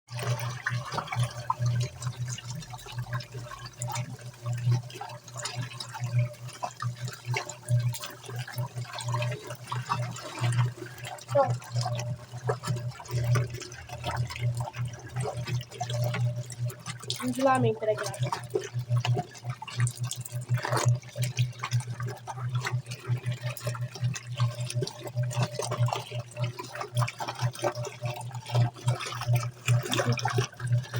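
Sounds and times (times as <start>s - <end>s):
washing machine motor hum pulsing: 0.1s - 30.9s
water churning and sloshing: 0.1s - 30.9s
low motor hum: 10.6s - 19.2s.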